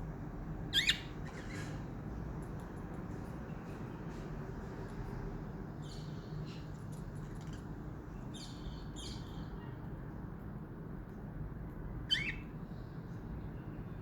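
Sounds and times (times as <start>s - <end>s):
budgerigars chirping: 0.8s - 1.7s, 12.1s - 12.4s.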